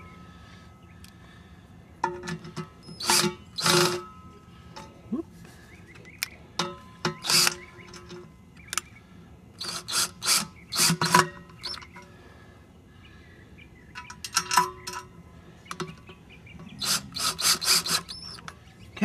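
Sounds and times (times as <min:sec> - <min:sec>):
parts scraping and clinking: 0:02.0 - 0:09.0, 0:09.6 - 0:12.1, 0:13.9 - 0:18.7.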